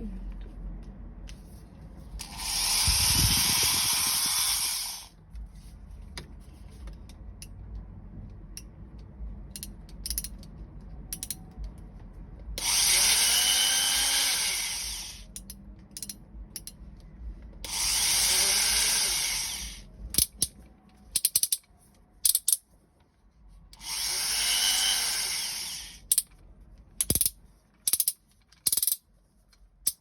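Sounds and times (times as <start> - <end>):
electric drill running: 2.2 - 5.1, 12.6 - 15.2, 17.7 - 19.9, 23.8 - 26.0.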